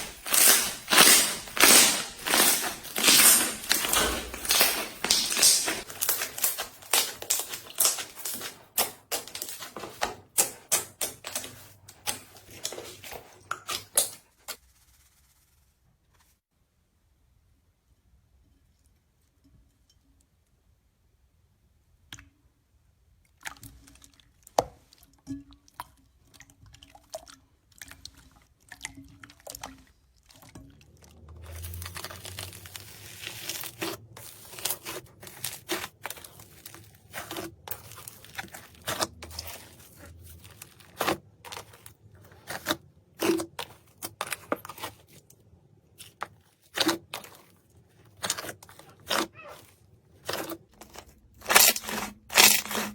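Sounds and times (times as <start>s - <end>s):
slime squishing and popping: 0.0s - 14.2s, 31.5s - 45.1s, 50.2s - 52.9s
slime tearing: 0.0s - 14.2s, 31.4s - 45.2s, 46.0s - 52.9s.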